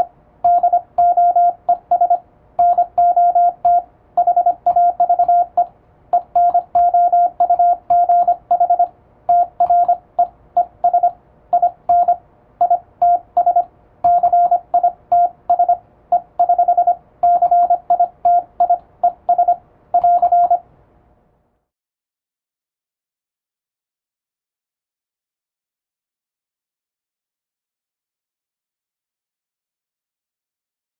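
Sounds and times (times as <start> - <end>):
morse code beeps: 0.0 - 20.6.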